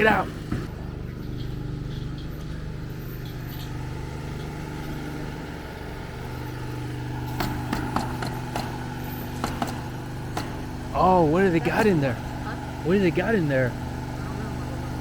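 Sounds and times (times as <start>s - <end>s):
engine idling: 0.0s - 15.0s
hammer nailing on roof: 7.3s - 10.9s.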